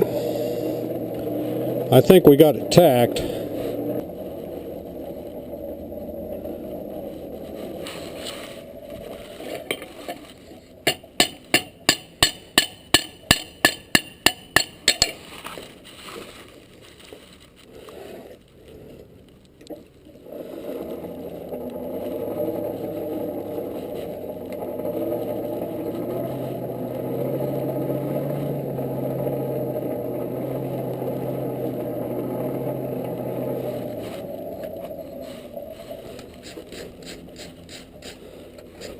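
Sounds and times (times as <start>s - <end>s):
hammer ringing on anvil: 10.9s - 15.1s.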